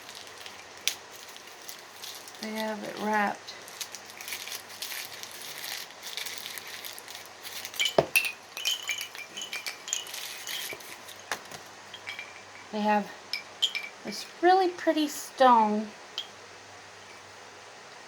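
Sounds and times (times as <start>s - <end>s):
wind chime tinkling: 7.5s - 14.3s, 16.2s - 16.4s
wind chime knock: 7.8s - 14.0s, 16.2s - 16.4s.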